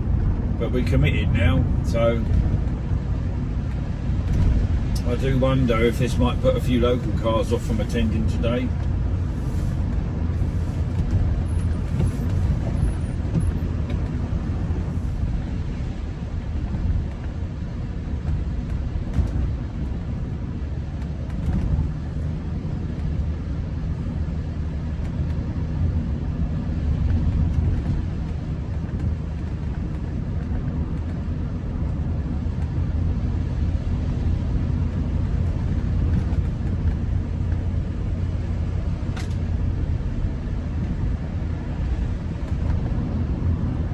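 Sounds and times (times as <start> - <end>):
car engine and road rumble: 0.0 - 43.9
tyres hissing on wet road: 9.2 - 13.0.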